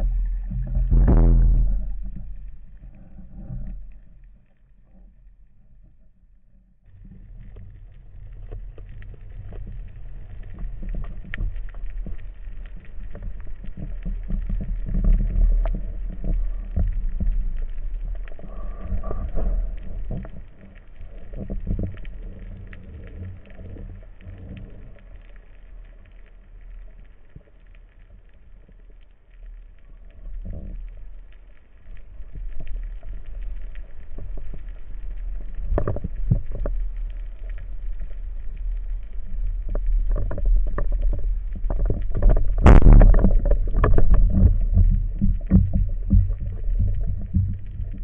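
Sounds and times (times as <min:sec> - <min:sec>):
small underwater clicks and crackles: 0:00.0 - 0:48.0
water rushing against camera housing: 0:39.2 - 0:48.0.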